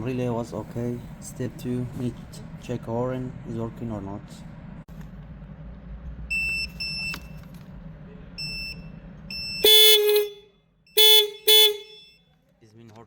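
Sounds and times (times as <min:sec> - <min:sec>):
car horn blast: 0:09.6 - 0:12.2.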